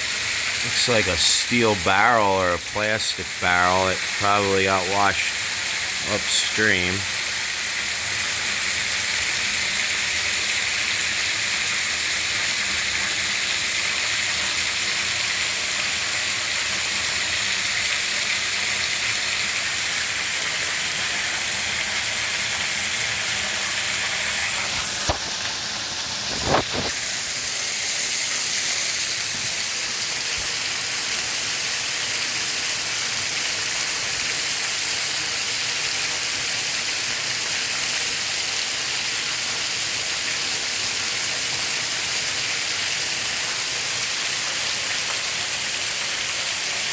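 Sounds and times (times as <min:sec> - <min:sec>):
waterfall rushing: 0:00.6 - 0:07.0.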